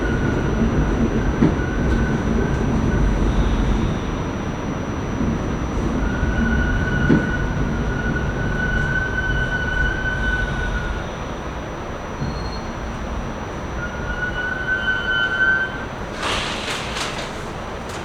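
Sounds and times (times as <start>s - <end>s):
subway train rumbling: 0.0s - 18.0s
high wheel squeal: 13.6s - 16.8s.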